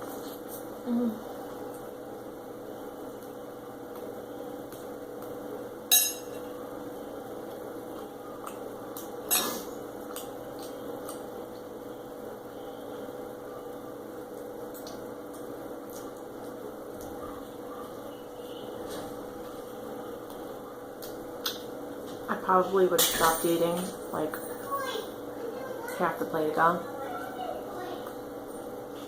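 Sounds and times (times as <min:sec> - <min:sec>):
background hum: 0:00.0 - 0:29.0
cutlery clinking on a plate: 0:09.3 - 0:10.2.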